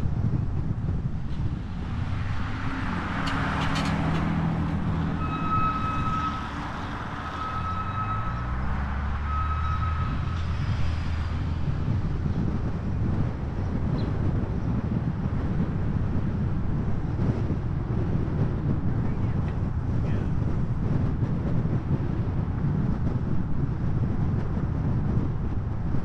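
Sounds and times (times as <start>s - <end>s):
engine running: 0.0s - 21.0s
wind on microphone: 0.0s - 26.0s
reversing alarm beeping: 5.2s - 8.6s, 9.2s - 10.2s.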